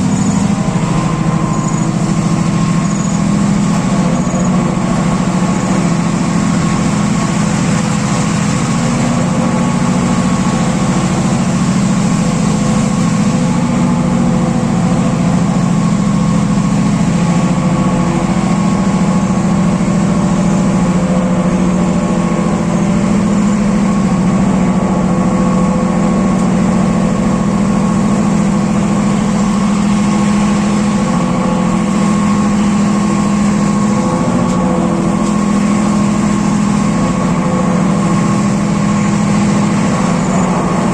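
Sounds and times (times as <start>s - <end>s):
faint engine whine: 0.0s - 40.9s
locomotive diesel engine drone: 0.0s - 40.9s.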